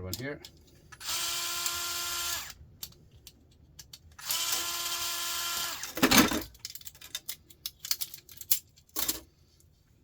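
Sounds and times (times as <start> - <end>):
power drill whine: 1.0 - 2.5, 4.2 - 6.0.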